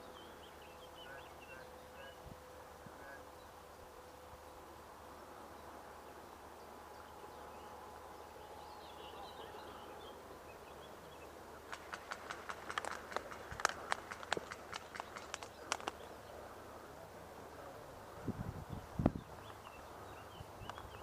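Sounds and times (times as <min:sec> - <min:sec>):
bird chirping: 0:06.9 - 0:16.4.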